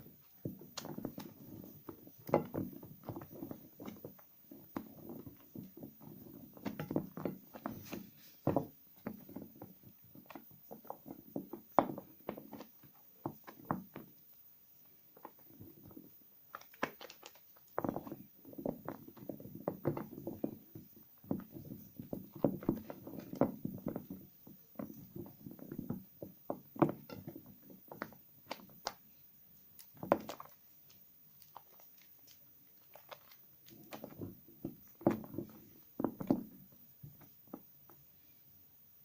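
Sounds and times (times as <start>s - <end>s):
soap squelching in hands: 29.8s - 34.1s.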